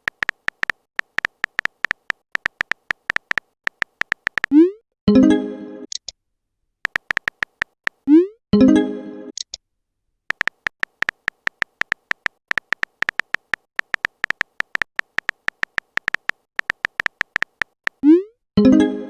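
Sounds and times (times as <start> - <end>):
keyboard typing clicks: 0.0 - 4.6, 6.8 - 8.2, 10.3 - 18.2.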